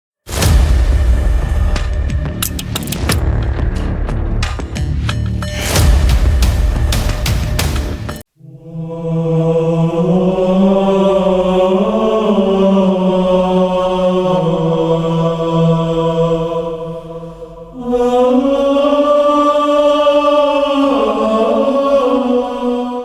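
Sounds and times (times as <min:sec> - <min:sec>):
chanted voices holding long notes: 0:08.4 - 0:23.0.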